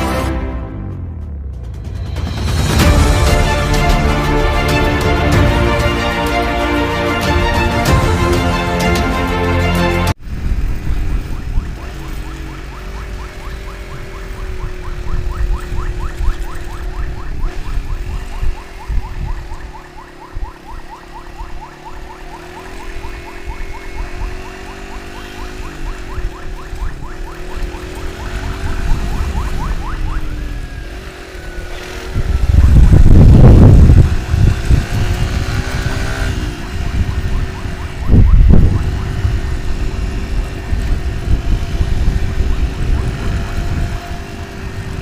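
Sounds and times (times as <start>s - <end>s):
wind: 0.0s - 45.0s
motorcycle engine rumble: 10.1s - 45.0s
ambulance siren yelping: 11.2s - 30.6s, 36.0s - 41.0s, 42.0s - 44.6s.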